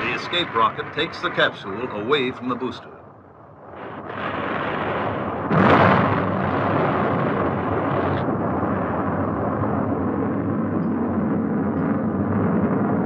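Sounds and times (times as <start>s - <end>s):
rocket blast: 0.0s - 2.9s, 3.5s - 13.0s
rocket roar: 0.0s - 13.0s.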